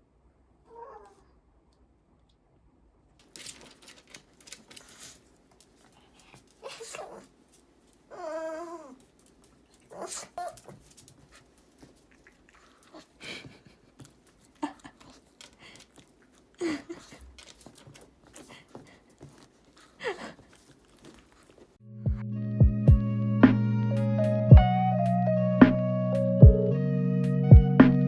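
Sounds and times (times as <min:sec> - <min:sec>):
dog whining: 0:00.7 - 0:01.3, 0:06.5 - 0:07.4, 0:08.1 - 0:09.1, 0:09.7 - 0:13.4.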